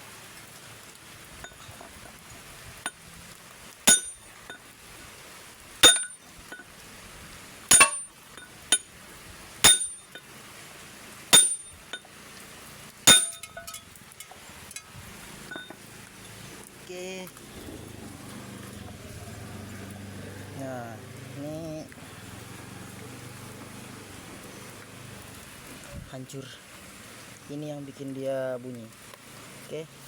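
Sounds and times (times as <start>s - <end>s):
hammer striking steel: 3.9s - 4.2s, 5.8s - 6.6s, 7.7s - 8.1s, 9.6s - 10.2s, 11.4s - 11.9s, 13.1s - 13.8s
light metallic taps: 13.1s - 14.9s.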